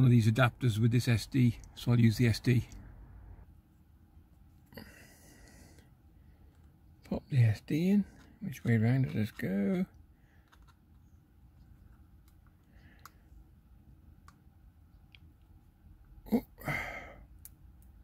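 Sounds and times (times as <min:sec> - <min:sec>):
muffled grunt: 0:16.2 - 0:17.1.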